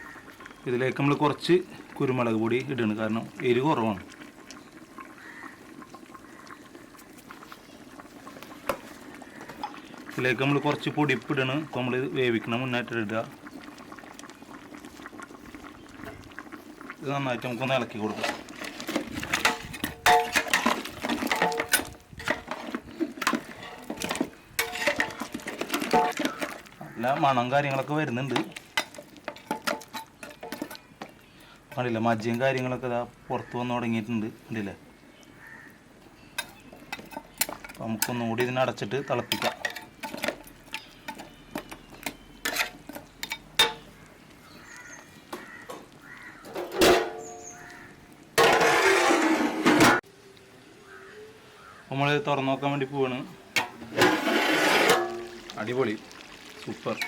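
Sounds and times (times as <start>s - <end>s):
crows cawing: 0.0s - 0.4s, 5.1s - 6.5s, 9.1s - 9.8s, 26.1s - 27.2s, 33.2s - 33.7s, 35.3s - 35.8s, 43.9s - 48.1s, 50.8s - 51.9s
spoon stirring in a pot: 13.5s - 32.7s, 36.3s - 49.2s
spoon clinking against pot: 19.3s - 26.6s, 36.4s - 38.6s, 39.3s - 43.9s.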